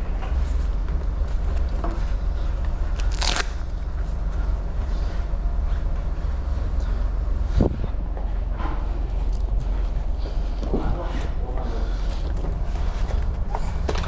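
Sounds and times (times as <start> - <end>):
wind buffeting microphone: 7.5 - 8.1.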